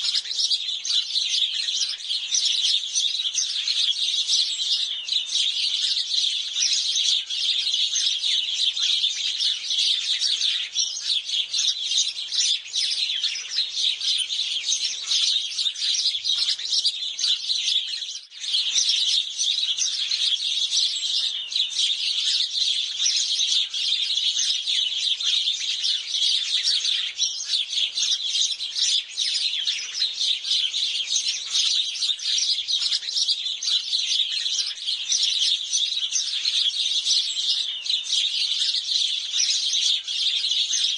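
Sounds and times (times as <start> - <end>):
sparrows chirping: 0.0 - 40.9.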